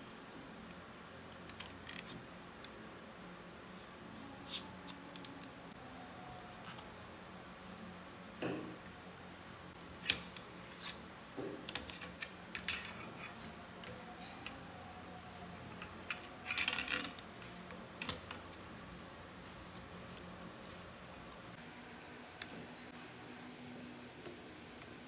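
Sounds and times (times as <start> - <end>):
plastic parts clicking and snapping: 1.3 - 2.8, 4.5 - 5.6, 11.6 - 14.6, 15.7 - 18.5.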